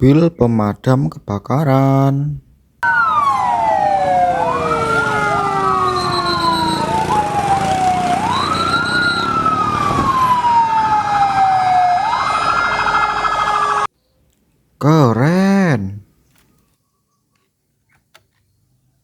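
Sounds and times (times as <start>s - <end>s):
toy siren wailing: 2.8s - 13.9s.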